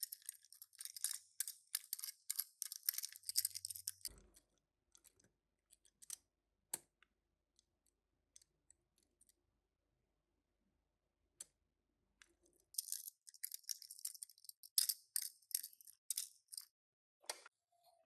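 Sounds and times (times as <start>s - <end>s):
small plastic pieces clicking: 0.0s - 4.1s, 12.8s - 16.7s.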